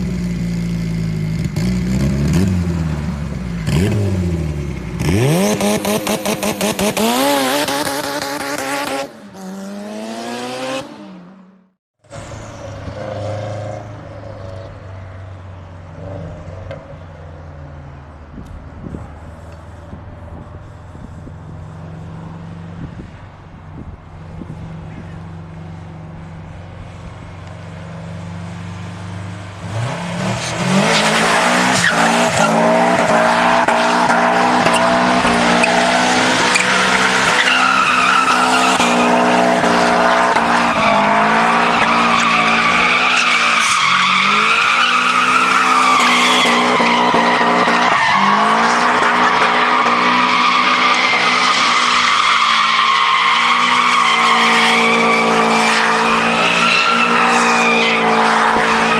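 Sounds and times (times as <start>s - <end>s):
car engine revving: 0.0s - 17.9s, 18.8s - 58.9s
tyres squealing: 30.3s - 58.9s.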